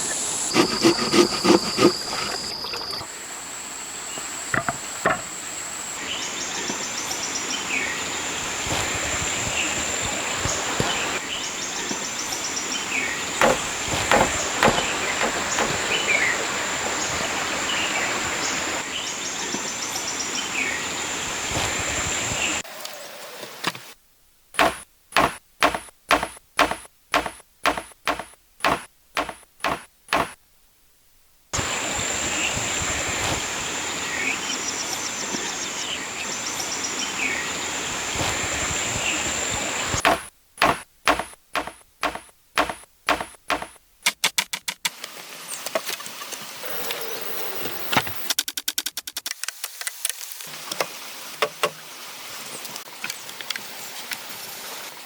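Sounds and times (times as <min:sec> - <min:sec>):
outdoor background noise: 0:00.0 - 0:55.0
woodworking blows: 0:00.1 - 0:03.0, 0:13.4 - 0:17.0, 0:24.6 - 0:30.4, 0:38.2 - 0:43.8.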